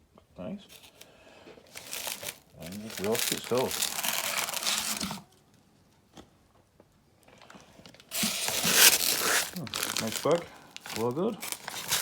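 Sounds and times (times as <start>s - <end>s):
packaging rustling and crinkling: 0.7s - 5.3s, 7.8s - 12.0s.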